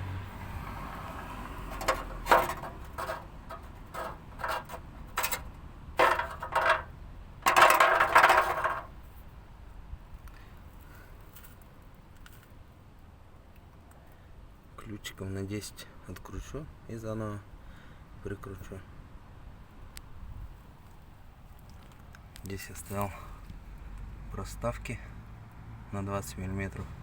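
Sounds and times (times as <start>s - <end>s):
heat shield rattling metallically: 1.6s - 9.0s.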